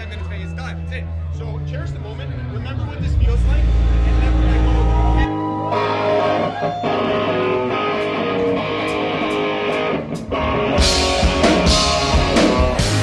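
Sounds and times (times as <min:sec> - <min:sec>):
guitar playing chords: 0:01.1 - 0:13.0
rock band playing: 0:01.9 - 0:13.0
drums: 0:02.7 - 0:13.0.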